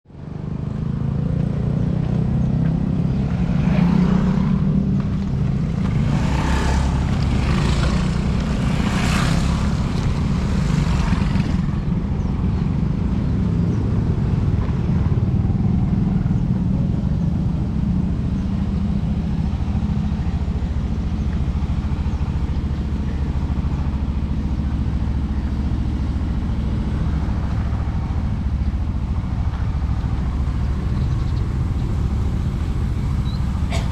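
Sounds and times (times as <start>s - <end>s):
motorcycles and cars passing: 0.1s - 33.9s
traffic engines rumbling: 0.1s - 33.9s.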